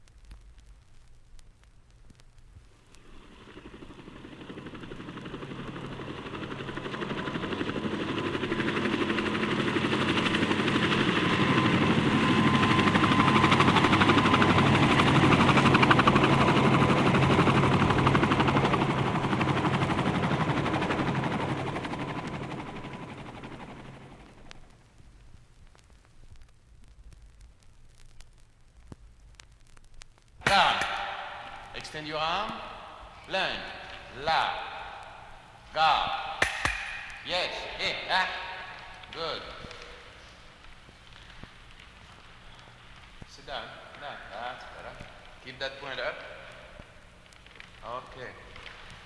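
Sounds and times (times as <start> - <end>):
steady whine: 0.0 - 49.0
helicopter rotor chop: 2.9 - 24.7, 30.4 - 35.2.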